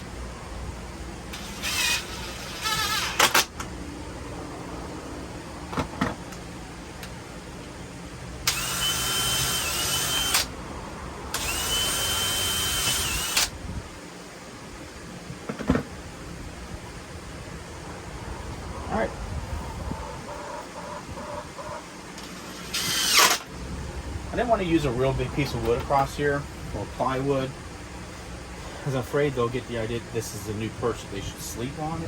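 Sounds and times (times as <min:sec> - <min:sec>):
power drill drilling into wood: 0:01.4 - 0:03.5, 0:08.4 - 0:10.5, 0:11.3 - 0:13.5, 0:22.4 - 0:23.5
drill clicks: 0:01.4 - 0:03.7, 0:08.4 - 0:10.5, 0:11.3 - 0:13.5, 0:22.2 - 0:23.5.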